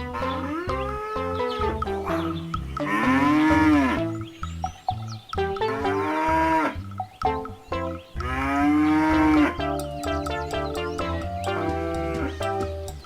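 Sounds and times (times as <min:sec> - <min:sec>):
cow mooing: 0:00.0 - 0:04.2, 0:05.6 - 0:07.0, 0:08.1 - 0:09.8, 0:11.4 - 0:12.5.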